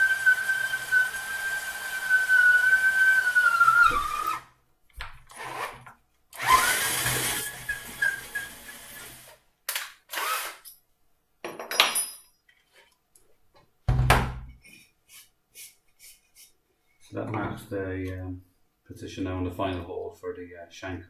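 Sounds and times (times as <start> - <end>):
power drill boring through wood: 0.0 - 4.5, 5.3 - 9.4, 10.1 - 10.6.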